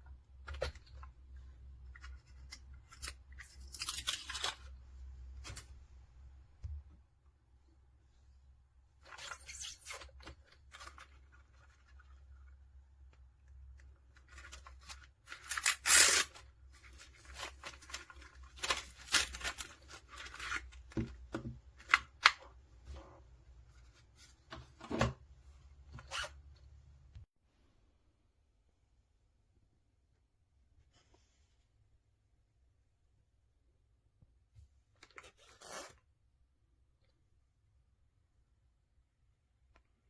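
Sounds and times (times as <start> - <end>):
packaging rustling and tearing: 14.3 - 20.9.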